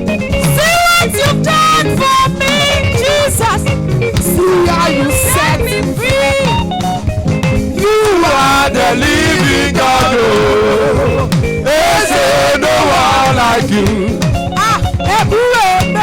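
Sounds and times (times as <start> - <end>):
worship band playing: 0.0 - 16.0
people singing: 2.4 - 6.6, 7.8 - 14.4.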